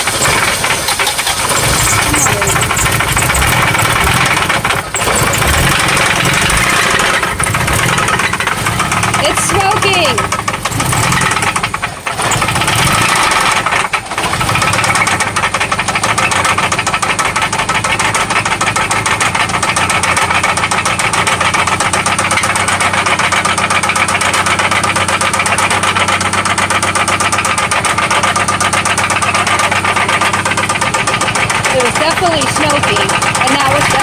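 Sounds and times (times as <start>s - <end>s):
car engine running: 0.0s - 34.0s
rapid knock inside engine: 0.0s - 34.0s.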